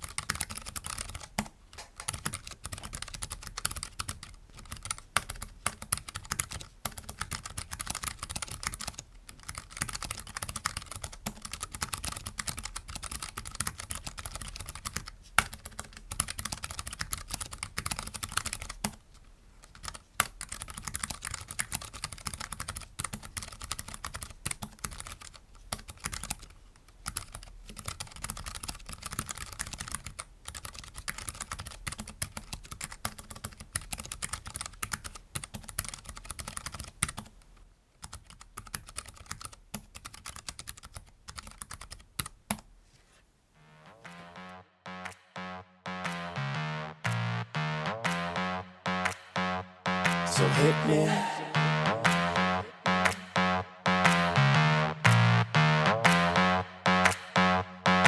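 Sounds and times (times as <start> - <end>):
mechanical keyboard typing: 0.0 - 37.4, 38.0 - 42.7.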